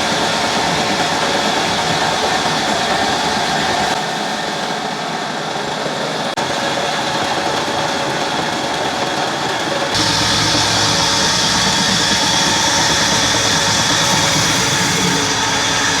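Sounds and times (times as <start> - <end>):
sawmill machinery din: 9.8 - 16.0.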